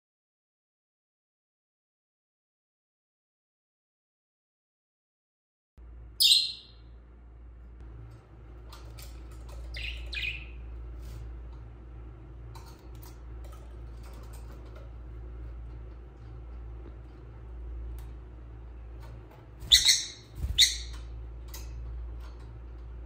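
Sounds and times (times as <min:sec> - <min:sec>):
birds chirping: 0:06.2 - 0:07.0, 0:09.0 - 0:11.0, 0:19.6 - 0:22.5.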